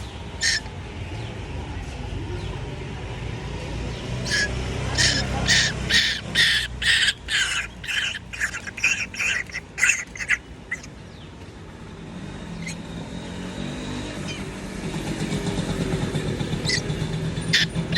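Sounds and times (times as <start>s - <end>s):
harsh bird begging calls: 0.4s - 0.7s, 4.2s - 10.9s, 16.5s - 17.9s.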